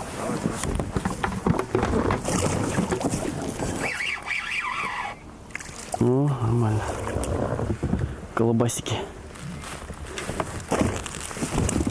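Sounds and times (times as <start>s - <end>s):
water lapping against boat hull: 0.0s - 8.4s, 9.1s - 11.9s
wind on microphone: 6.7s - 8.4s, 11.4s - 11.9s.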